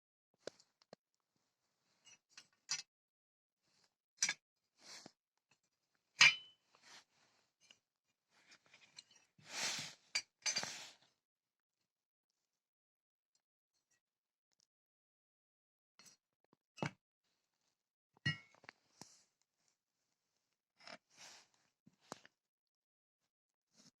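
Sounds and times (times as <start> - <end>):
short scrape: 9.5 - 10.0.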